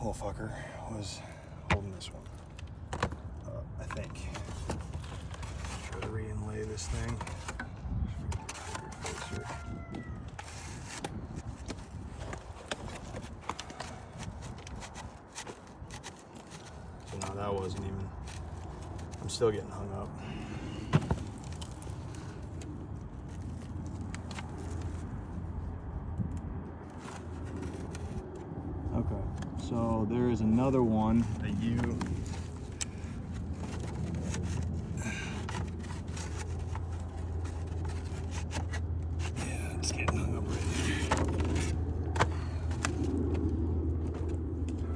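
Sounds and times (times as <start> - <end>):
wood knocking and scraping on wood: 1.7 - 25.0, 31.1 - 44.9
steady low hum: 10.1 - 44.9
steady low rumble: 16.8 - 44.9.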